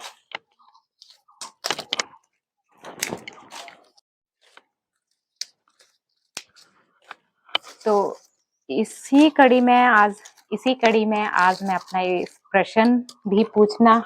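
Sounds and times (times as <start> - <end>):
leaves crackling and rustling: 9.1 - 12.4.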